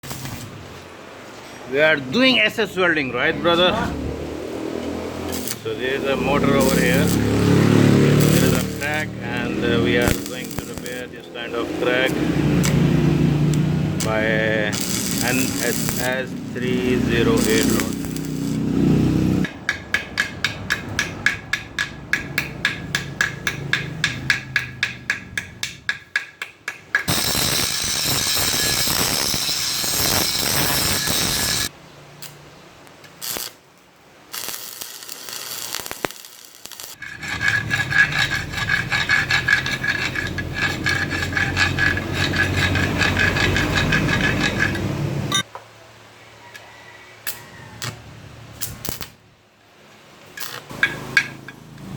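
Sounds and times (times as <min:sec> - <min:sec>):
metal scraping or filing: 0:04.6 - 0:19.5, 0:27.0 - 0:31.7, 0:34.4 - 0:45.4.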